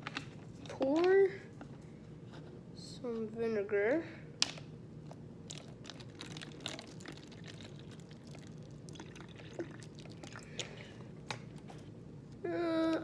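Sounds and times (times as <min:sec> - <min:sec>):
liquid pouring into plastic bottle: 0:05.5 - 0:10.9.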